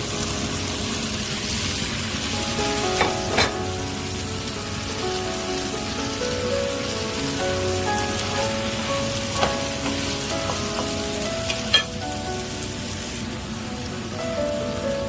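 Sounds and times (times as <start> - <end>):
background music: 0.0 - 15.0
food sizzling in a frying pan: 0.0 - 15.0
utensil knocking against pan: 3.0 - 3.6, 9.3 - 11.9.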